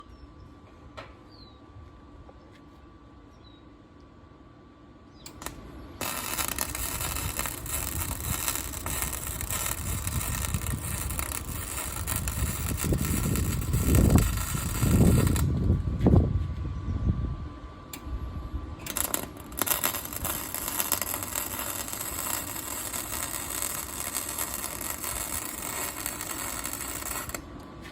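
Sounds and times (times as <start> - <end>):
welding arc crackling: 5.3 - 15.8, 18.8 - 27.6
low rumble: 5.4 - 27.9.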